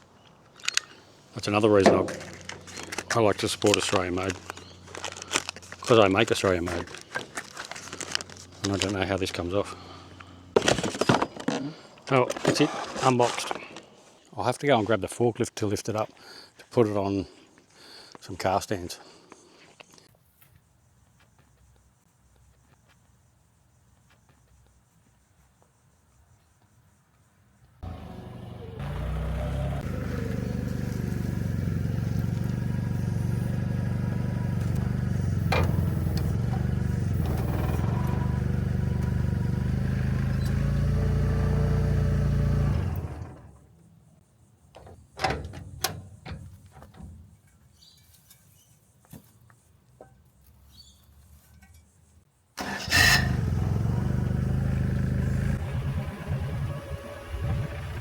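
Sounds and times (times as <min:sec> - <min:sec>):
forklift engine running: 0:27.8 - 0:43.5, 0:52.6 - 0:58.0.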